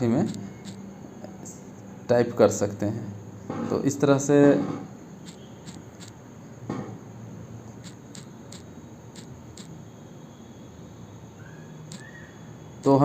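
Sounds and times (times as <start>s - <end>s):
touchscreen typing taps: 0.2s - 0.8s, 5.2s - 6.2s, 7.8s - 9.8s.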